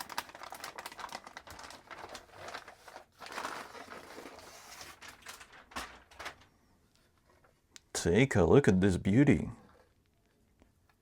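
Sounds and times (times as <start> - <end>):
plastic packaging crinkling: 0.0 - 6.5.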